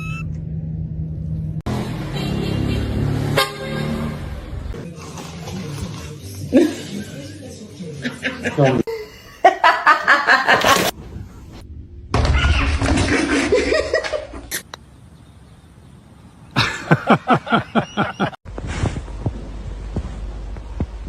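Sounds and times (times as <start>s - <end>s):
human laughter: 8.0s - 10.9s, 13.0s - 14.5s, 16.6s - 18.4s.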